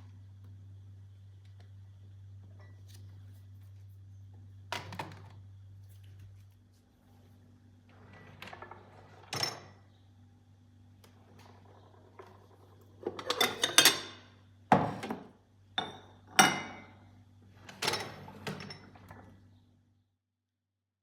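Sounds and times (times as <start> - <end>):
dishes and utensils clinking: 13.0 - 15.0, 15.8 - 17.0.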